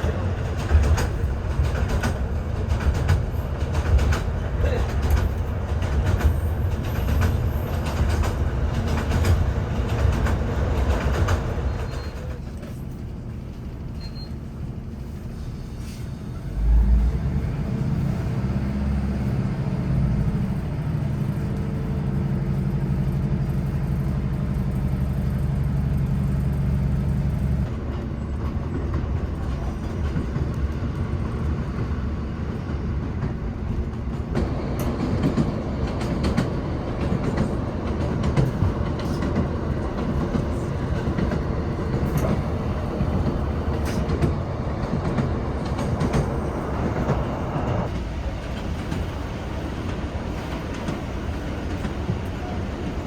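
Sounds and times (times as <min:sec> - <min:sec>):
train engine drone: 0:00.0 - 0:53.0
train wheels rumbling and rattling: 0:00.0 - 0:53.0.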